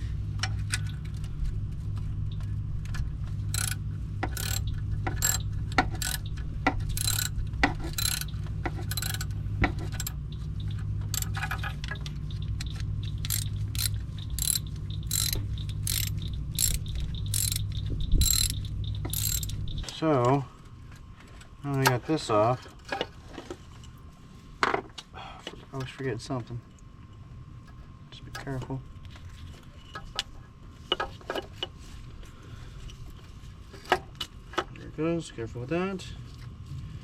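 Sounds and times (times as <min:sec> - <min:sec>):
ratchet wrench clicking: 0:03.5 - 0:05.4, 0:06.0 - 0:06.3, 0:06.9 - 0:09.3, 0:09.9 - 0:10.2, 0:11.1 - 0:11.5, 0:13.1 - 0:19.6.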